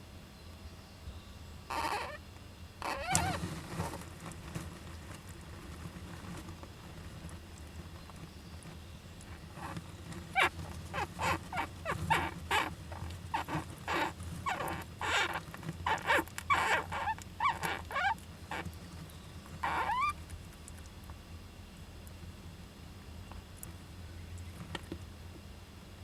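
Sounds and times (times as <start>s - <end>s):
flying squirrel calling: 1.7s - 2.2s, 10.3s - 18.7s, 19.6s - 20.2s.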